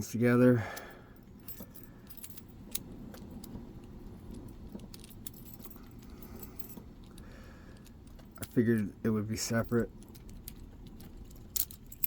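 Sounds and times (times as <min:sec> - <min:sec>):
keys jingling: 0:00.8 - 0:12.0.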